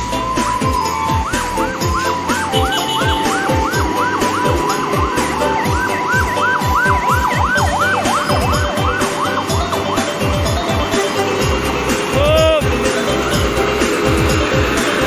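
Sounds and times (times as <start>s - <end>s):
siren-like wail: 0.0s - 10.8s
electronic dance music: 0.0s - 15.0s
fast kick drum beat: 0.6s - 9.0s
held horn-like tone: 2.4s - 3.8s.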